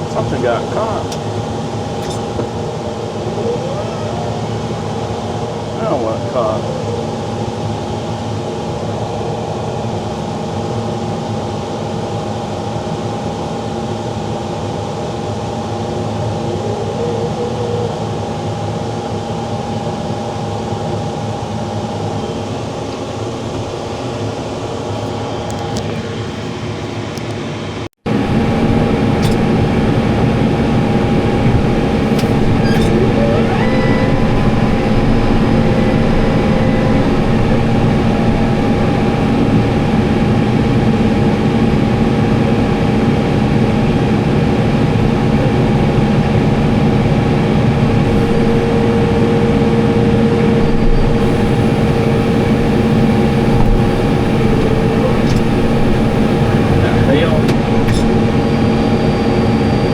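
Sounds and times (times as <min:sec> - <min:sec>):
tractor and baler droning: 0:28.1 - 0:41.9, 0:44.8 - 0:59.9.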